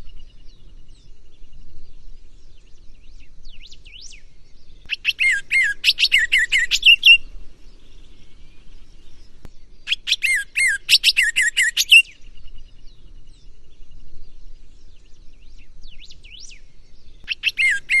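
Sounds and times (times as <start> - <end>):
bird singing whistled phrases: 4.9 - 7.2, 9.8 - 12.2, 15.9 - 18.0.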